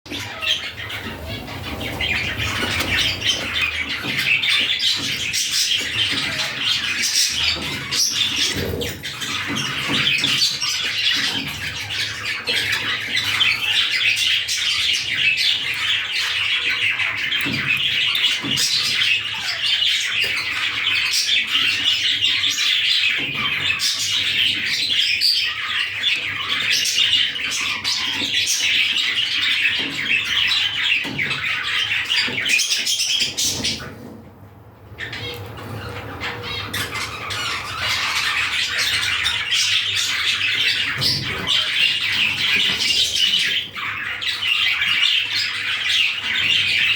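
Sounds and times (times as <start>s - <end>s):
budgerigar chattering and warbling: 0.1s - 33.9s, 35.0s - 46.9s.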